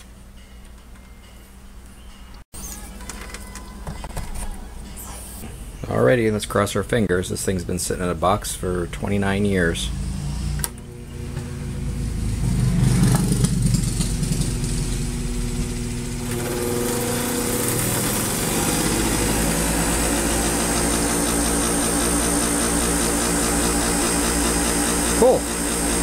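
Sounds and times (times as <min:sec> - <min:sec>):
grinder motor humming and whining: 0:09.8 - 0:26.0.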